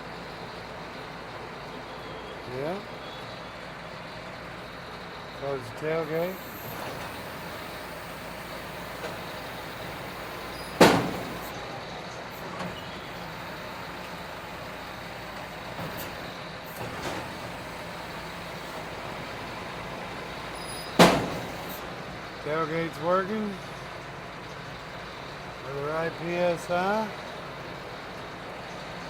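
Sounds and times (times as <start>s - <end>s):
tractor engine running: 0.0s - 29.0s
heavy metal clunks: 6.8s - 11.6s, 14.0s - 21.9s.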